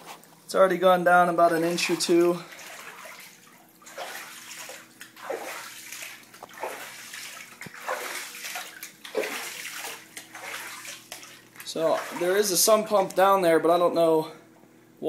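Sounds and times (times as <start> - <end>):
water sloshing and splashing: 1.3 - 13.2.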